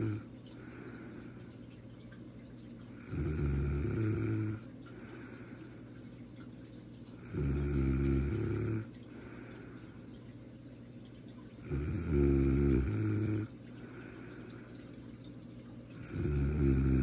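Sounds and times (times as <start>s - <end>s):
quiet breathing: 0.0s - 1.9s, 2.8s - 6.4s, 7.1s - 10.4s, 11.5s - 17.0s
person snoring: 3.0s - 4.6s, 7.2s - 8.9s, 11.6s - 13.5s, 16.0s - 17.0s.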